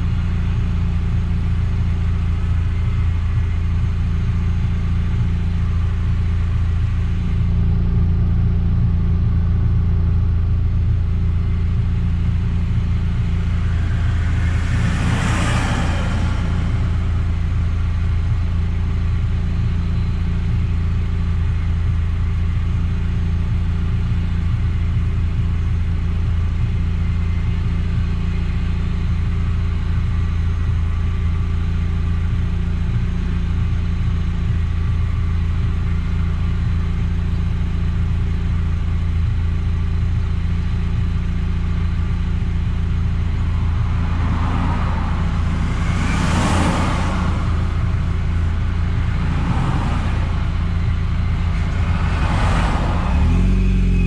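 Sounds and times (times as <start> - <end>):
car engine humming: 0.0 - 54.0
rushing whoosh: 12.7 - 18.9, 43.2 - 54.0.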